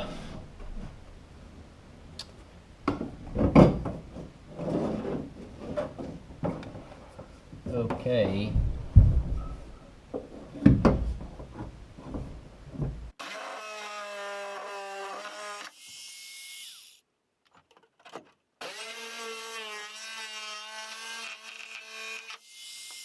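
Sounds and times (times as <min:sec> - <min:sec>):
knocks and thuds on wood: 0:07.9 - 0:09.4, 0:10.2 - 0:13.1.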